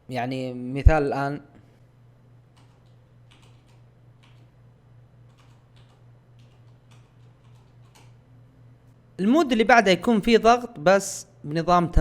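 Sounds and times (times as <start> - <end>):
steady low hum: 0.0 - 12.0
keyboard keys clicking: 2.6 - 4.5, 5.3 - 8.2.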